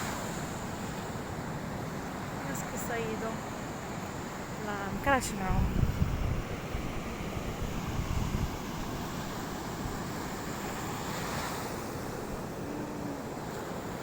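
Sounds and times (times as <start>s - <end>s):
sea surf washing on shore: 0.0s - 14.0s
wind buffeting microphone: 4.7s - 10.7s.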